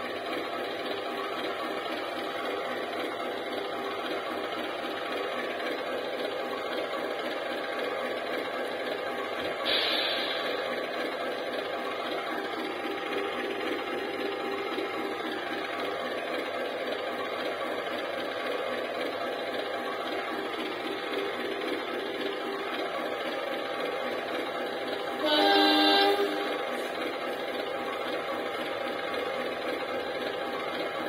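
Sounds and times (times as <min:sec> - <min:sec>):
model locomotive engine hum: 0:00.0 - 0:31.0
locomotive horn: 0:25.1 - 0:26.7.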